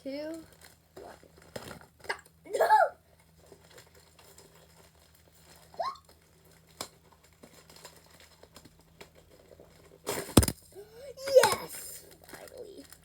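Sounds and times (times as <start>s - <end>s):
cardboard packaging rustling: 10.1s - 10.6s
package tearing open: 10.2s - 10.6s.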